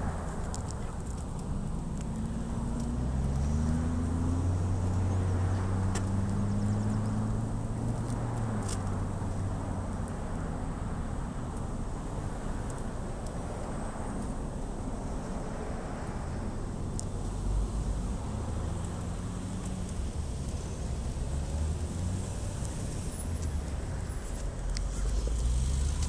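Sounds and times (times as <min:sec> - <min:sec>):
vehicle engine passing by: 0:00.0 - 0:10.0, 0:17.3 - 0:26.0.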